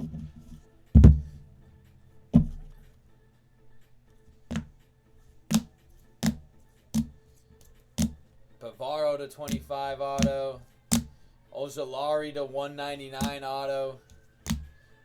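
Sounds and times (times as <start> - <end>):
faint background music: 0.0 - 15.0
objects tapping on tabletop: 2.4 - 2.8, 4.5 - 4.8, 5.5 - 7.2, 8.0 - 8.2, 9.5 - 11.2, 14.5 - 14.8.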